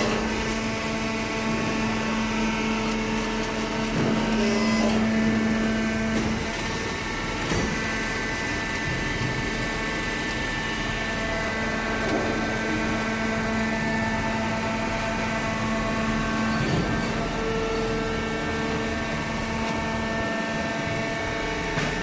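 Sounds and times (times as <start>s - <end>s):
hydraulic baler humming: 0.0s - 22.0s.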